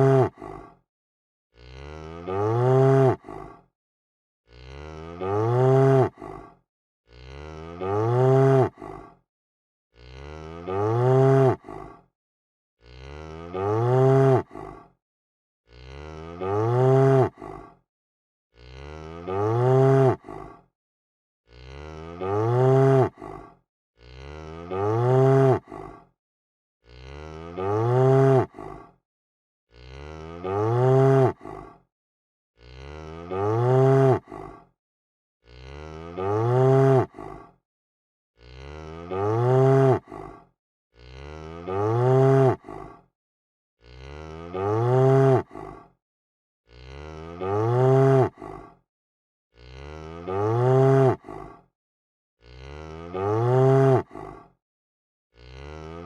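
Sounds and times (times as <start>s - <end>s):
cow mooing: 0.0s - 0.3s, 1.6s - 3.2s, 4.5s - 6.2s, 7.1s - 8.8s, 10.0s - 11.6s, 12.8s - 14.4s, 15.7s - 17.4s, 18.6s - 20.2s, 21.5s - 23.2s, 24.0s - 25.7s, 26.9s - 28.5s, 29.7s - 31.4s, 32.6s - 34.3s, 35.5s - 37.1s, 38.4s - 40.1s, 41.0s - 42.6s, 43.8s - 45.4s, 46.7s - 48.4s, 49.6s - 51.2s, 52.4s - 54.0s, 55.4s - 56.0s.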